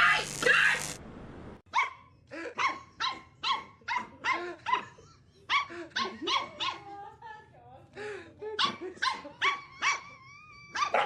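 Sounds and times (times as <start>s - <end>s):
dog barking: 1.7s - 6.9s, 8.6s - 10.1s, 10.7s - 11.0s.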